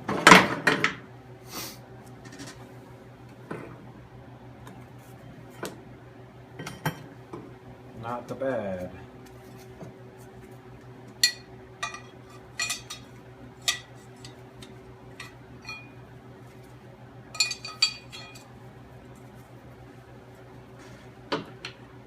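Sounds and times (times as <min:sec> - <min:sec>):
faint steady hum: 0:00.0 - 0:22.0
metal parts clinking: 0:17.4 - 0:18.5.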